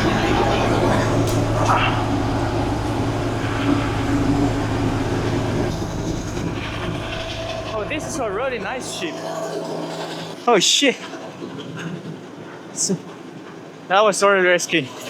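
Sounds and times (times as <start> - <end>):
boat engine droning: 0.0 - 12.6.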